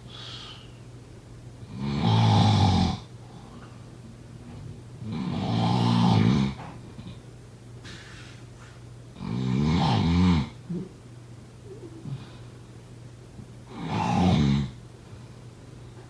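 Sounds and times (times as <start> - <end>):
faint breath: 0.0 - 0.9, 7.8 - 8.8
steady low hum: 0.0 - 16.0
rattling snores: 1.7 - 3.1, 5.0 - 6.8.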